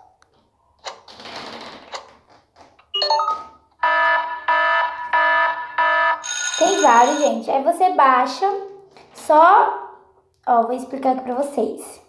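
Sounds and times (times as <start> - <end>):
electronic ringing pulses: 3.8 - 7.4.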